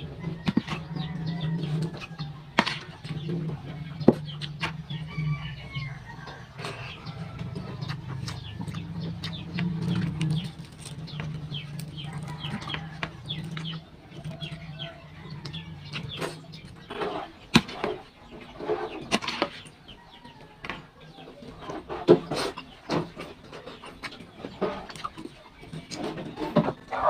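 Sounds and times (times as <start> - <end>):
birds chirping: 0.0 - 27.0.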